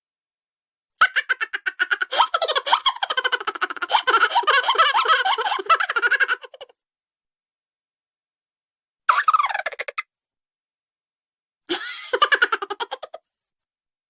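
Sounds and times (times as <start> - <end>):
sped-up high-pitched giggling: 1.0 - 6.7, 9.1 - 10.0, 11.7 - 13.2.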